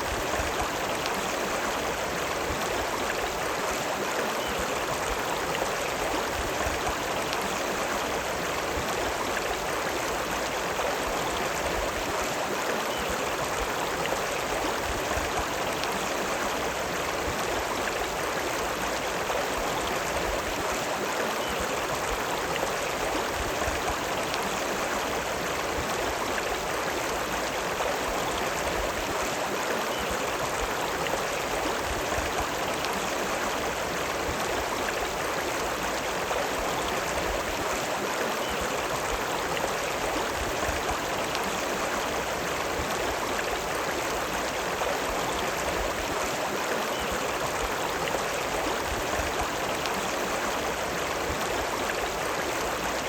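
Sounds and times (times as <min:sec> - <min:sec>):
river water rushing: 0:00.0 - 0:53.0.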